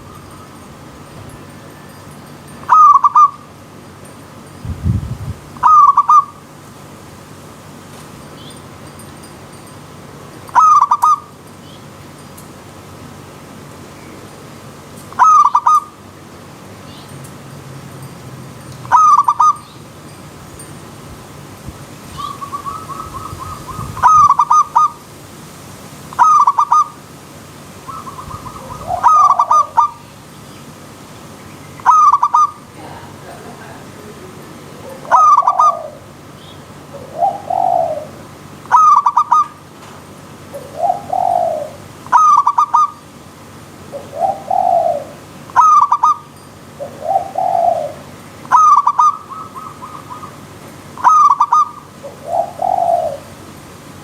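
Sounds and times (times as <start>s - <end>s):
doves cooing: 2.6s - 3.6s, 5.5s - 6.5s, 10.5s - 11.4s, 15.1s - 16.0s, 18.8s - 19.7s, 22.1s - 25.0s, 26.1s - 27.1s, 27.8s - 30.4s, 31.7s - 39.7s, 40.3s - 53.5s
lower arched coo: 27.9s - 30.0s, 31.8s - 36.1s, 36.9s - 39.4s, 40.5s - 42.9s, 43.9s - 46.2s, 46.8s - 50.4s, 51.0s - 53.4s.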